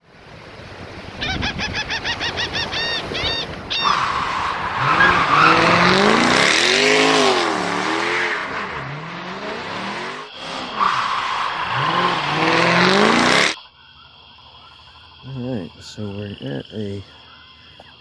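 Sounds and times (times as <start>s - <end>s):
high squeaky chirps: 1.2s - 6.3s
vehicle engine revving: 3.8s - 13.6s.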